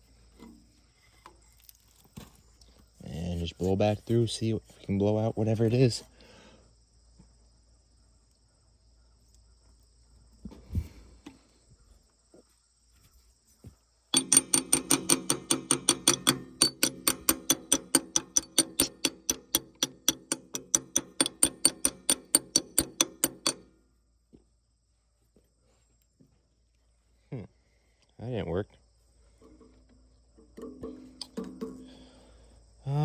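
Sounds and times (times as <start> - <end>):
sharp regular clicking: 14.2 - 23.6.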